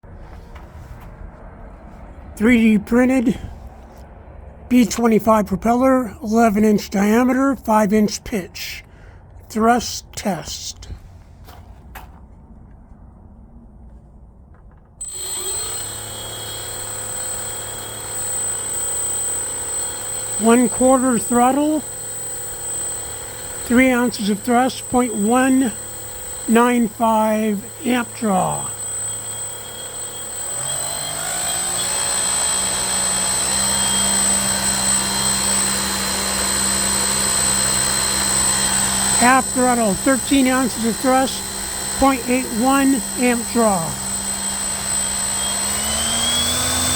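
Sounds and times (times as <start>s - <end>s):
electric motor spinning propeller: 15.0s - 46.9s.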